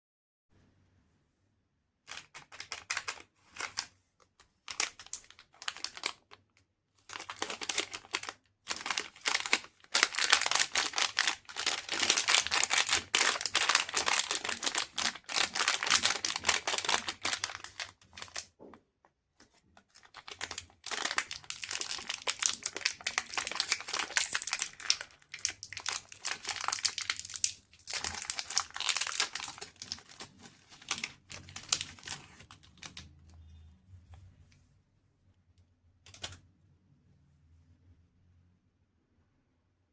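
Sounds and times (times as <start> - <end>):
wrappers crinkling and tearing: 4.6 - 6.4, 7.0 - 18.5, 19.8 - 33.1.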